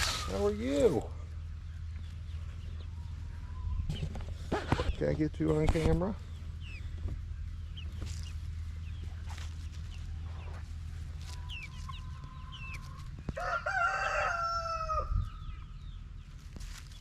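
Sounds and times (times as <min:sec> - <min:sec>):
rooster crowing: 0:13.3 - 0:15.3.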